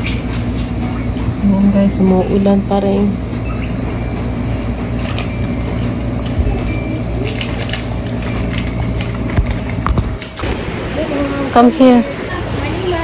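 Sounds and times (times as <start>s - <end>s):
steady rain: 7.2s - 13.0s.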